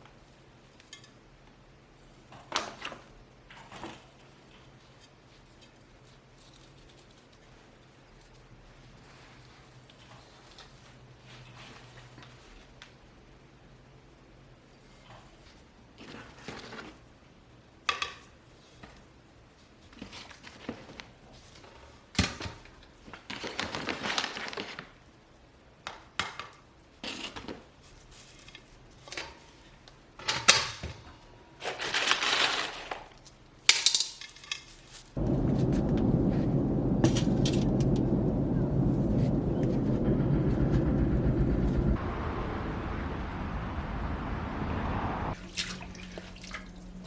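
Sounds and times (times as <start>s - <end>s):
loud steady rushing noise: 35.2s - 47.0s.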